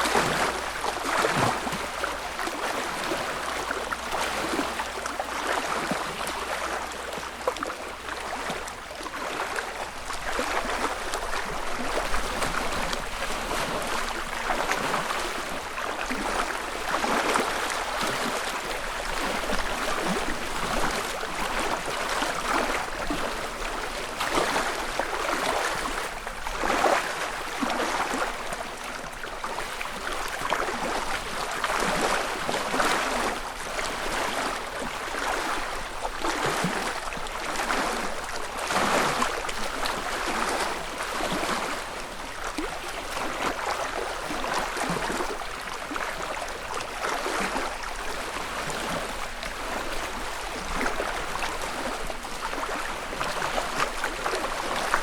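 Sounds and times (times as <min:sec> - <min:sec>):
lake ripples lapping at shore: 0:00.0 - 0:55.0.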